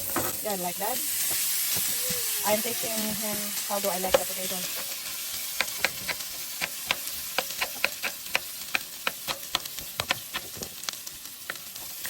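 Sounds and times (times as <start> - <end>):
potatoes sizzling in a pan: 0.0 - 12.0
sharp crackling pops: 5.5 - 11.8.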